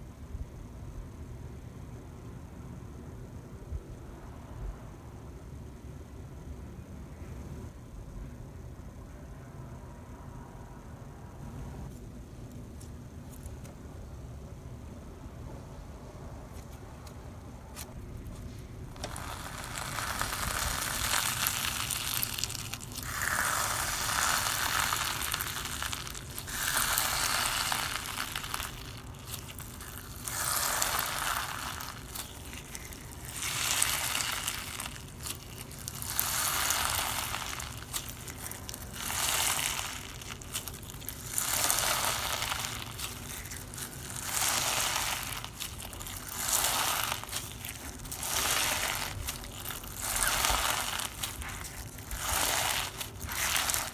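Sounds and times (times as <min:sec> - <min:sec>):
slime crackling when squeezed: 0:18.9 - 0:53.9.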